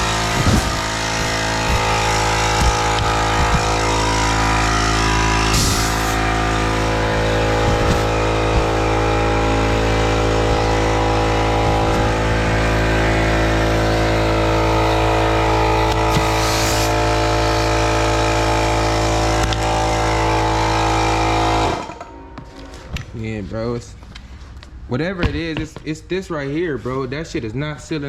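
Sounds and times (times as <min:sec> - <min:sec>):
engine running steadily: 0:00.0 - 0:22.4.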